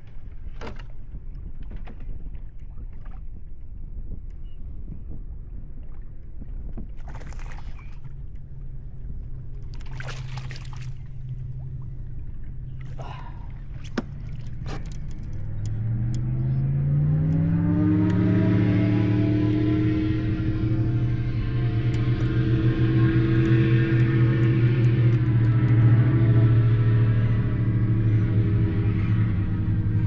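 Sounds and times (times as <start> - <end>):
water splashes: 6.9 - 8.4, 9.4 - 15.9
motor humming: 8.8 - 30.0.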